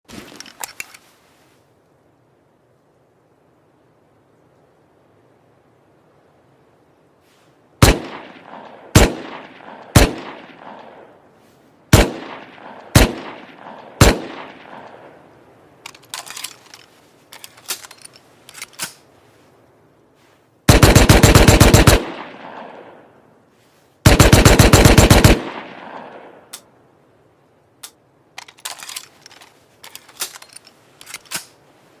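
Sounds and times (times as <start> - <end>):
gun single shots with echo: 7.8 - 11.2, 11.9 - 15.2, 20.7 - 23.1, 24.1 - 26.6
quiet clicks and rattles: 15.8 - 19.0
rapid-fire gun bursts: 20.7 - 22.3, 24.1 - 25.8.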